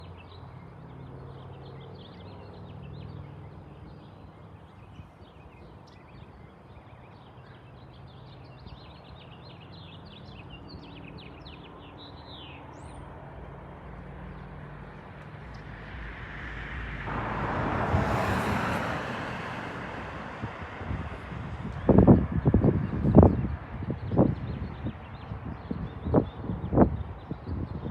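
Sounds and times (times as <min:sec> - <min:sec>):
birds chirping: 0:00.0 - 0:17.0.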